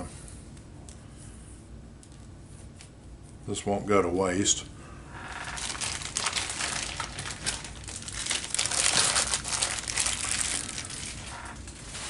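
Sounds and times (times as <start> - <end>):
packaging crinkling: 5.3 - 12.0.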